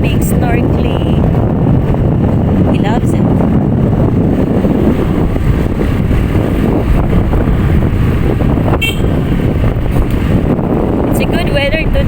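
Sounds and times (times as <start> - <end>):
moving vehicle rumble: 0.0 - 12.0
wind buffeting microphone: 0.0 - 12.0.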